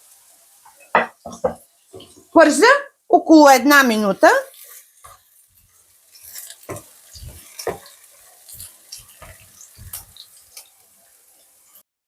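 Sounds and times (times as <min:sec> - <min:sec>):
onions sizzling in oil: 0:00.0 - 0:11.8
utensil knocking and scraping pan: 0:01.0 - 0:02.2, 0:06.3 - 0:10.1.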